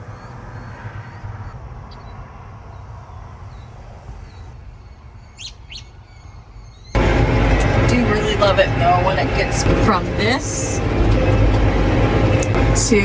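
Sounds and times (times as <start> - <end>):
birds chirping: 0.0 - 13.0
downward-sweeping bird calls: 1.9 - 7.4
low steady rumble: 7.0 - 13.0.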